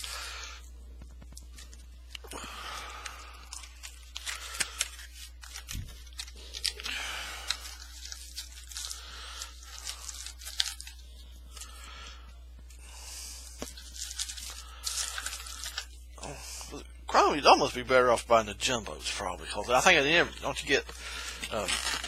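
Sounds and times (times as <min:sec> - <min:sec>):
packaging tearing and crinkling: 0:03.1 - 0:11.0, 0:13.7 - 0:15.9, 0:21.2 - 0:22.0.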